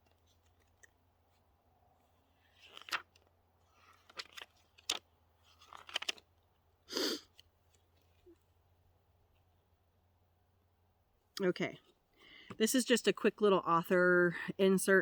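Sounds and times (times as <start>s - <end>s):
paper rustling: 2.0s - 6.3s.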